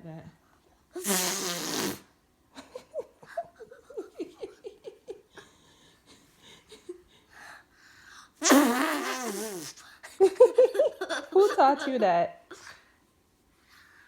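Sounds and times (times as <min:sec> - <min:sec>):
child's imitation fart noise: 0:01.0 - 0:02.1, 0:08.4 - 0:09.8
giggling: 0:02.6 - 0:07.3, 0:10.0 - 0:12.8.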